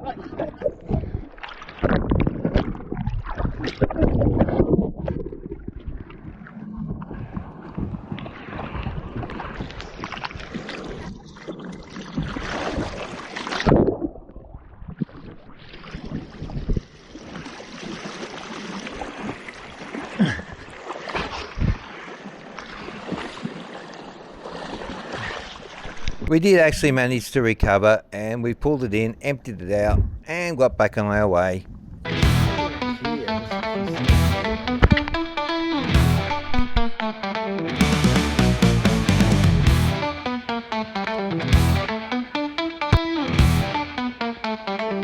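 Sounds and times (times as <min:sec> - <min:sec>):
water splashing around canoe: 0:00.2 - 0:26.3
wind buffeting microphone: 0:29.9 - 0:30.3, 0:31.6 - 0:32.1.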